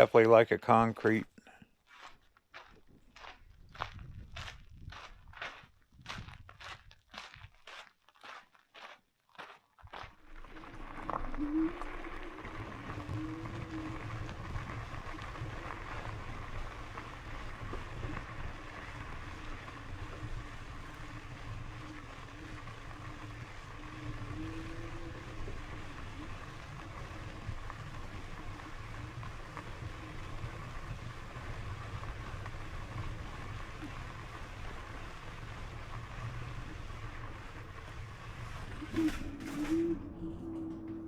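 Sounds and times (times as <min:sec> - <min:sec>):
tyre and wind rumble: 0:03.0 - 0:07.6, 0:10.2 - 0:40.1
electric motor hum: 0:10.2 - 0:41.0.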